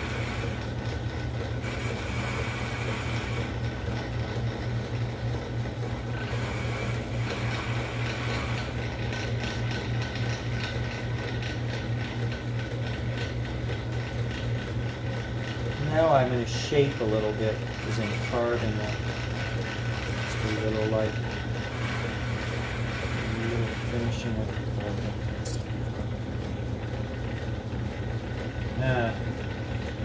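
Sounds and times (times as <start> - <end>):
high tone of lathe cutting: 0.0 - 4.2, 5.9 - 11.2, 15.6 - 25.4
lathe motor hum: 0.0 - 30.0.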